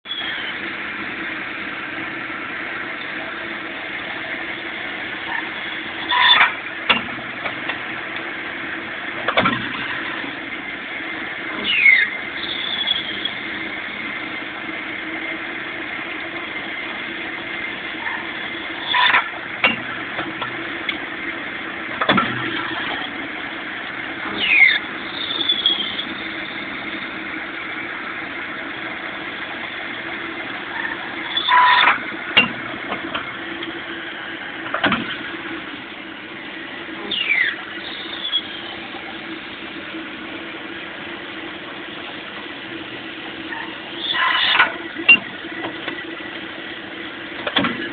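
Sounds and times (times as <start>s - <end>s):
short falling squeals: 0.1s - 0.6s, 5.3s - 6.6s, 11.6s - 13.4s, 24.4s - 26.8s, 30.7s - 32.0s, 37.1s - 38.8s, 43.5s - 45.2s
lathe machine hum: 0.1s - 47.9s.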